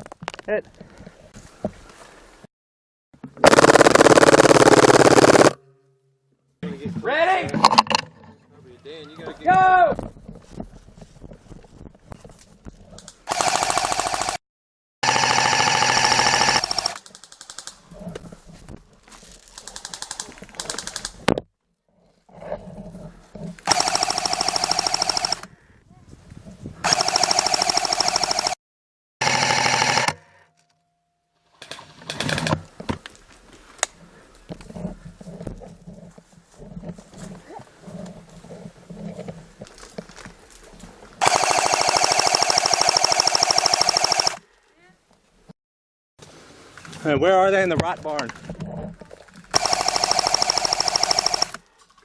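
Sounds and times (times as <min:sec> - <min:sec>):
airsoft gun firing full auto: 0:03.4 - 0:05.6, 0:13.3 - 0:14.4, 0:15.0 - 0:17.5, 0:23.7 - 0:25.4, 0:26.9 - 0:28.6, 0:41.2 - 0:44.4, 0:49.5 - 0:51.6.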